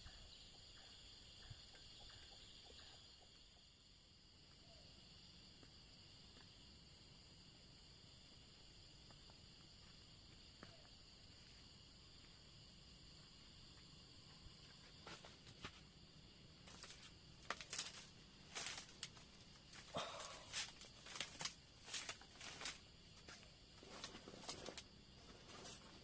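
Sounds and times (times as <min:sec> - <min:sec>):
crickets chirping: 0:00.0 - 0:26.0
rustling and crackling: 0:16.6 - 0:26.0.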